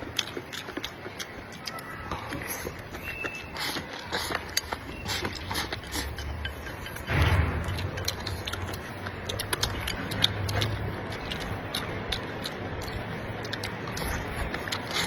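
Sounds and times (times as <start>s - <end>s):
chewing crunchy food: 0.0s - 15.0s
low rumble: 6.8s - 12.2s.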